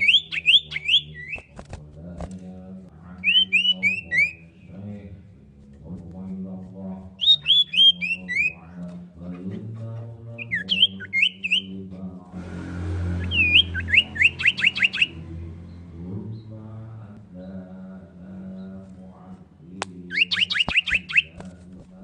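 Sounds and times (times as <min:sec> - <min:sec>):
bird calling whistled notes: 0:00.0 - 0:01.5, 0:03.2 - 0:04.5, 0:07.2 - 0:08.6, 0:10.4 - 0:11.7, 0:13.2 - 0:15.3, 0:20.1 - 0:21.4.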